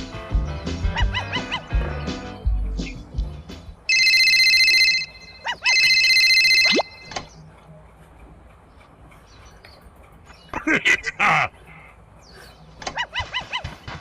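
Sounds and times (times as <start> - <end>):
music: 0.0 - 3.9
electronic ringing tones: 3.9 - 7.3.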